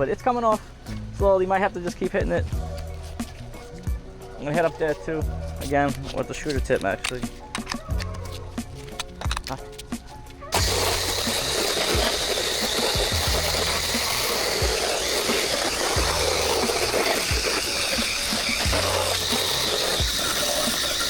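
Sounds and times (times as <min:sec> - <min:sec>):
background music with steady beat: 0:00.0 - 0:21.0
pressure washer spraying: 0:10.5 - 0:21.0.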